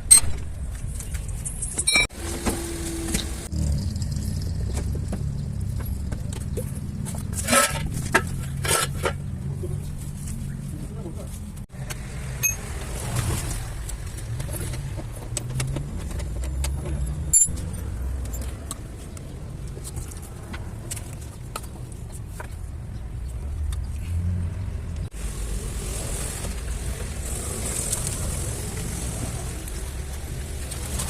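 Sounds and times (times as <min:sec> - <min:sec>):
low vehicle rumble: 0:00.0 - 0:31.0
hand tools clinking on metal: 0:16.4 - 0:18.8.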